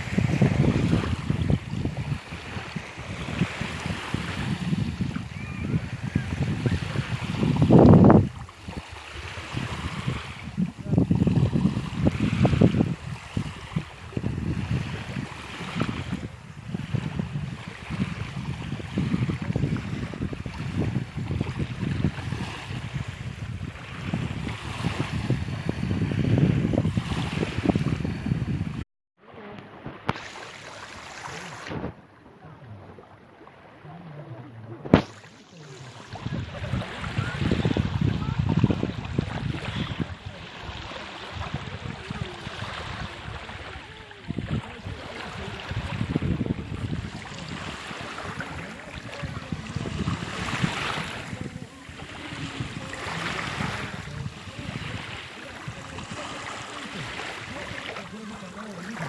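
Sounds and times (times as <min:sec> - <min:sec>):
light wind: 0:00.0 - 0:59.0
waves washing: 0:00.0 - 0:59.0
sharp knock: 0:34.9 - 0:35.2.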